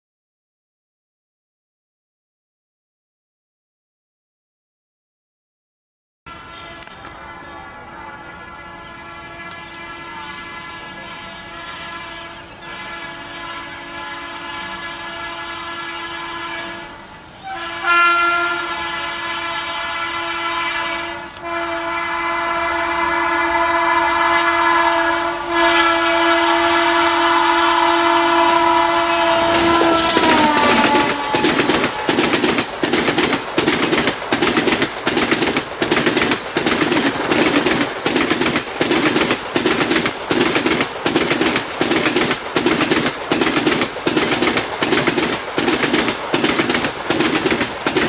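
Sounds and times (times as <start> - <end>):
locomotive twin-tone air horn: 6.3 - 32.3
train approaching: 6.3 - 48.0.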